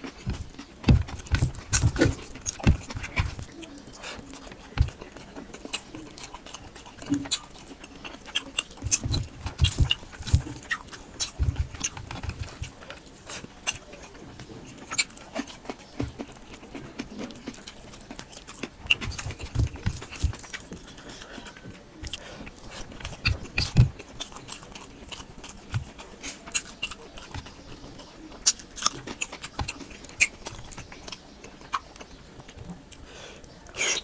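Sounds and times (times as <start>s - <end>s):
chewing and lip-smacking: 0.0s - 34.0s.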